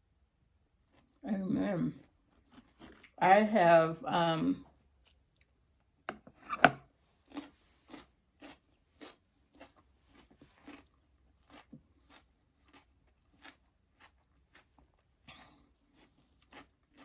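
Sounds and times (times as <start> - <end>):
person chewing crisp salad: 0.8 - 1.2, 1.9 - 3.2, 5.0 - 5.6, 6.8 - 17.0.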